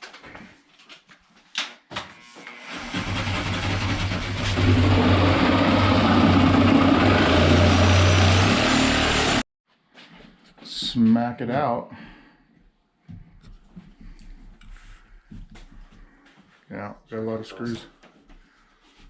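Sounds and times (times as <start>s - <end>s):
power saw cutting drywall: 2.2s - 9.5s.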